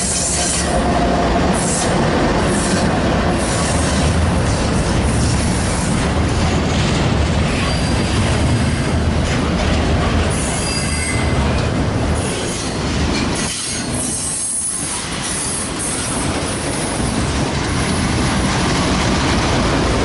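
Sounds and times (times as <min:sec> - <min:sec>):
train wheels rumbling and rattling: 0:00.0 - 0:20.0
faint high wheel squeal: 0:07.6 - 0:08.1, 0:10.4 - 0:11.4.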